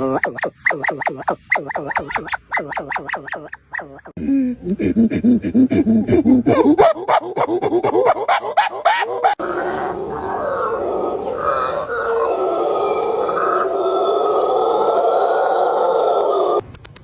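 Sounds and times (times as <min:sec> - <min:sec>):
rough continuous animal call: 0:00.0 - 0:04.2, 0:06.4 - 0:16.6.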